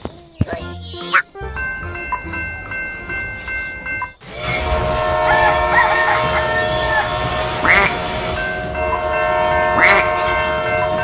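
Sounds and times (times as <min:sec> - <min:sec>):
long horn-like chord: 0:04.2 - 0:11.0.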